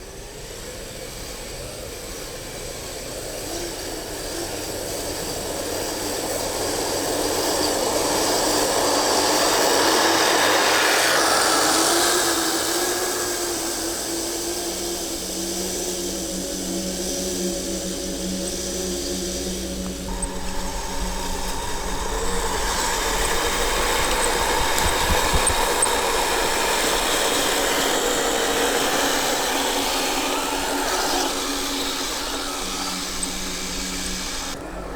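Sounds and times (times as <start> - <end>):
toy vehicle electric motor whine: 0.0 - 34.9.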